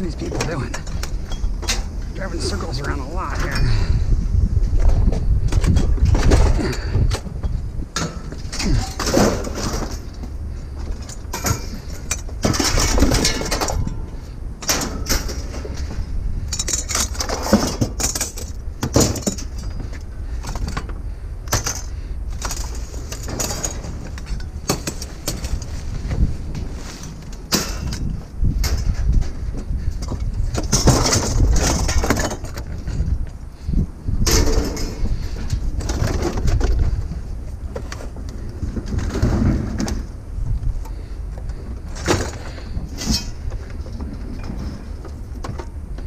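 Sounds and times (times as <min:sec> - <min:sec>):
low steady rumble: 0:00.0 - 0:46.0
scrap metal clanking: 0:10.9 - 0:20.9, 0:21.5 - 0:29.2, 0:41.9 - 0:45.1.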